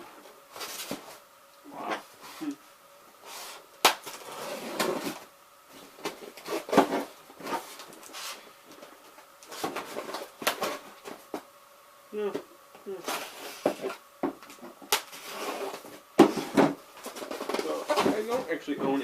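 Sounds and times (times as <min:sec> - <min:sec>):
box packaging rustling: 0:13.1 - 0:18.5.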